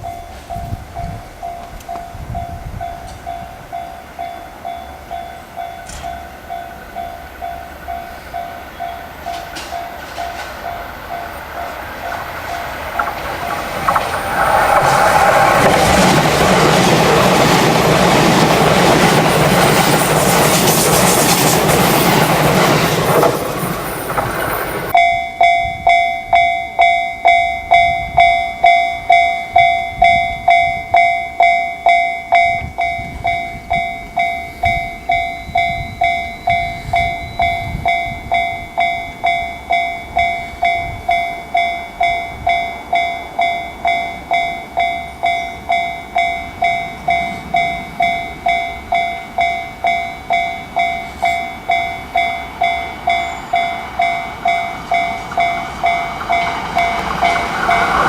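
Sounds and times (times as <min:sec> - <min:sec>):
train rushing past: 0:00.0 - 0:25.1, 0:31.9 - 0:58.0
level crossing bell ringing: 0:21.8 - 0:58.0.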